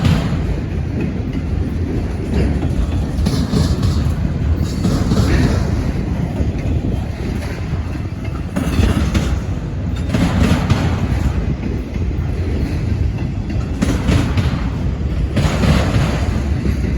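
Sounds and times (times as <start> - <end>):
train wheels rumbling on rails: 0.0 - 16.9
wheels clicking over rail joints: 0.0 - 16.9.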